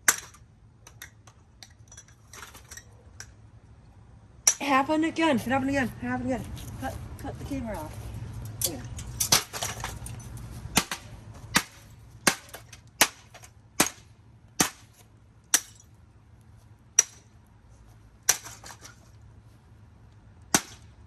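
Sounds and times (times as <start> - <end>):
sharp metallic blows: 10.7 - 15.9.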